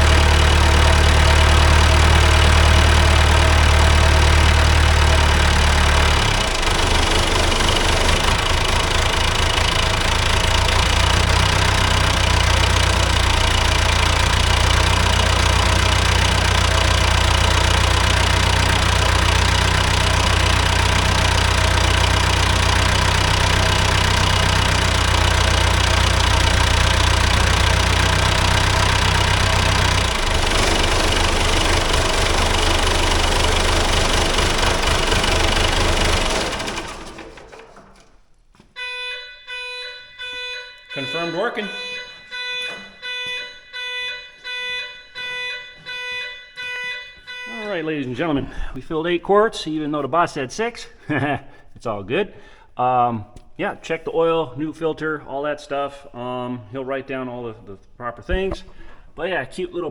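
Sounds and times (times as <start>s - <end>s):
diesel engine idling: 0.0s - 37.6s.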